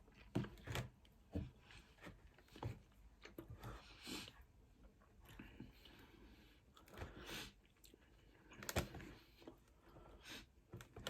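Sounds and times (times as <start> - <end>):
person chewing food: 5.0 - 10.2.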